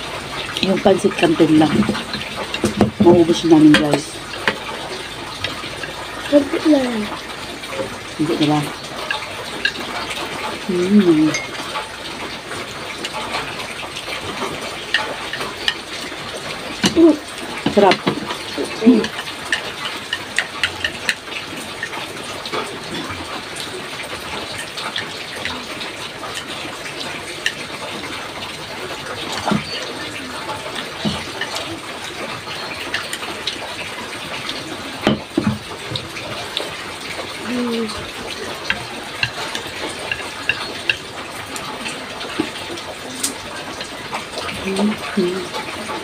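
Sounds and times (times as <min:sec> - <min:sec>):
utensils clicking on plate: 0:17.6 - 0:22.6, 0:38.6 - 0:42.6.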